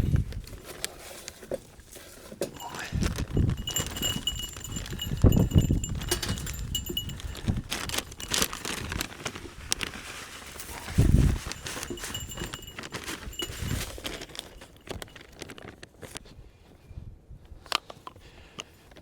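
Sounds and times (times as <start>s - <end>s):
goats clattering and knocking: 2.5s - 9.1s, 11.3s - 15.4s.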